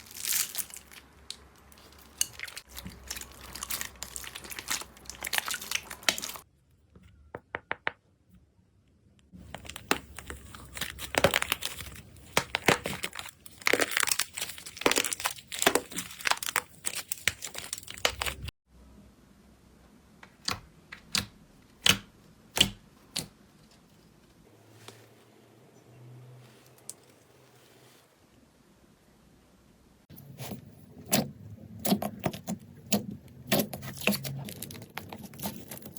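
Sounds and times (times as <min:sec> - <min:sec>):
slime crackling and crunching: 0:00.0 - 0:06.5, 0:09.4 - 0:18.5, 0:31.8 - 0:35.9.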